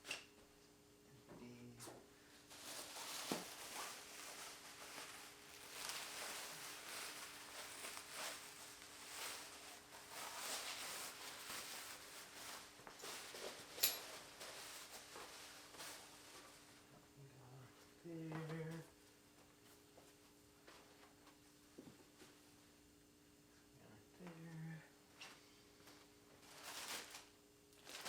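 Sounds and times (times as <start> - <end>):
faint steady hum: 0.0 - 28.0
tools rustling and scraping: 2.5 - 16.5.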